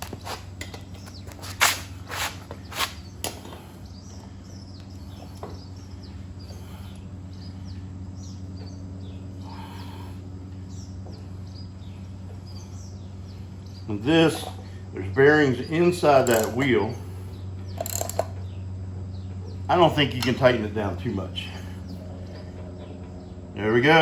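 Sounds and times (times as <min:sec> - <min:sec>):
steady low hum: 0:00.0 - 0:24.0
wild birds chirping: 0:00.0 - 0:24.0
socket ratchet clicking: 0:16.2 - 0:16.6, 0:17.8 - 0:18.4.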